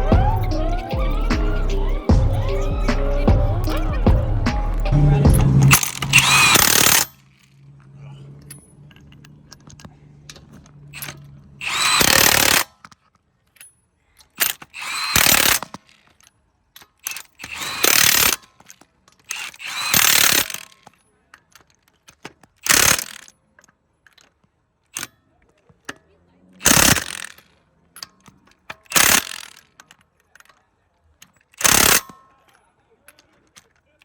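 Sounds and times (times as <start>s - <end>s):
power tool bursts: 2.4s - 7.3s, 10.9s - 12.8s, 14.4s - 16.0s, 17.0s - 20.9s, 22.6s - 23.3s, 26.6s - 27.5s, 28.8s - 29.7s, 31.5s - 32.2s
small clicks: 8.4s - 34.0s.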